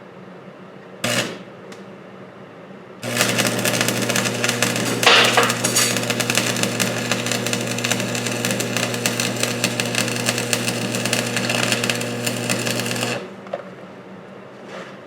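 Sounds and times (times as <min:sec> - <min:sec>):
welding arc crackling: 0:01.0 - 0:01.4, 0:03.0 - 0:13.4
welding machine hum: 0:01.0 - 0:01.5, 0:03.0 - 0:13.5.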